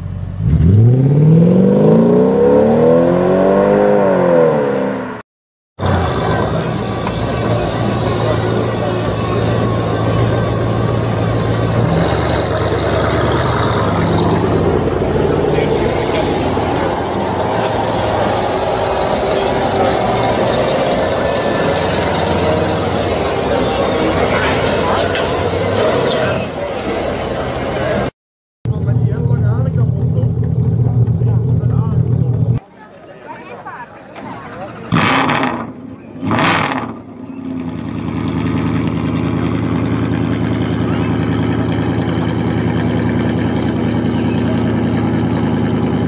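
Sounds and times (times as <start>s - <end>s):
engine idling loudly: 5.8s - 32.6s, 37.5s - 46.0s.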